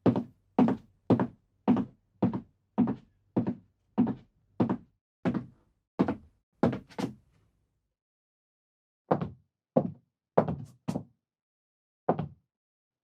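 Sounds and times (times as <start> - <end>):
footsteps on wooden floor: 0.0 - 7.1.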